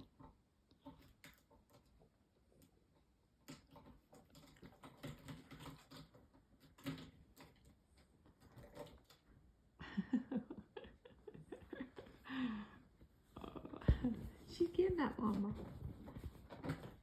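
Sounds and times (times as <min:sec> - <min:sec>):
soft rustling: 0:12.8 - 0:17.0.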